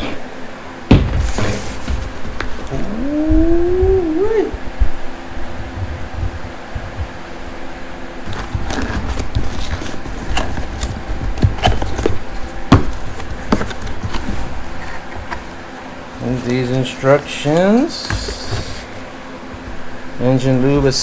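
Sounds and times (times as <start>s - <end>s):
cardboard packaging rustling: 0.9s - 3.3s, 8.2s - 21.0s.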